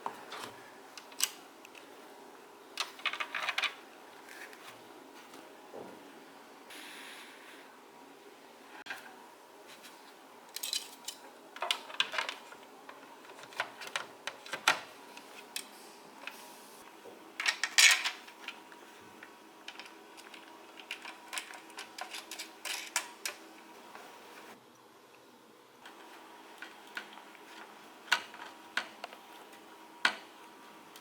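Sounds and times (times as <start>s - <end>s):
faint steady hum: 0.0s - 31.0s
plastic parts clicking and rattling: 2.8s - 3.8s, 10.5s - 15.7s, 17.4s - 18.6s, 19.2s - 23.4s.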